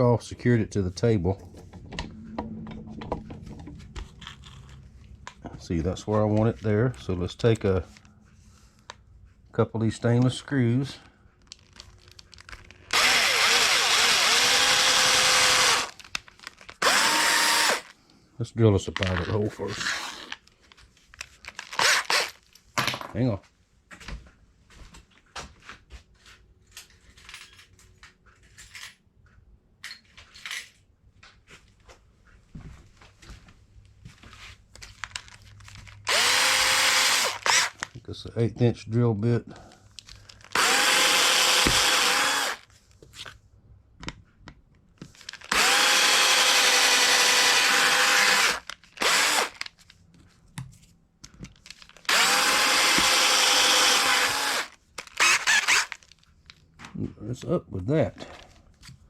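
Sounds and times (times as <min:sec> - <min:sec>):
electric drill whining: 0:12.8 - 0:16.0, 0:16.8 - 0:17.9, 0:21.8 - 0:22.4, 0:36.1 - 0:37.8, 0:40.5 - 0:42.7, 0:45.4 - 0:49.7, 0:52.0 - 0:56.0
metal tools clinking and rattling: 0:26.8 - 0:29.0.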